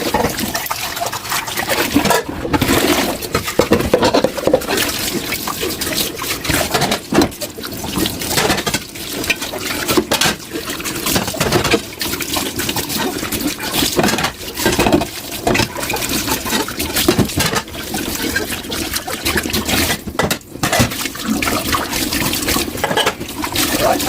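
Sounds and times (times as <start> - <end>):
tap water running into sink: 0.0 - 24.0
dishes clinking: 1.9 - 4.7, 19.8 - 21.0, 22.8 - 23.3.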